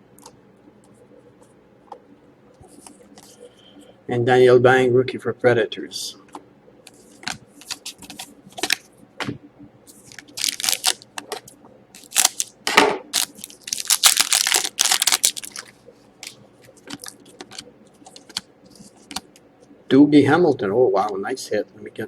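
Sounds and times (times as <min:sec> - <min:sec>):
foil wrapper crinkling: 0:09.9 - 0:19.2
trading cards clicking: 0:13.2 - 0:18.5.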